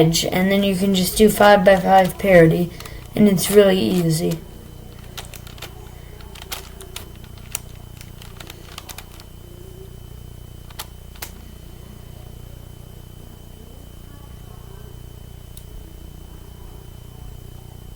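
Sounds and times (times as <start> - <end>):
steady low hum: 0.0 - 17.9
puzzle cube layers clicking: 2.8 - 9.3.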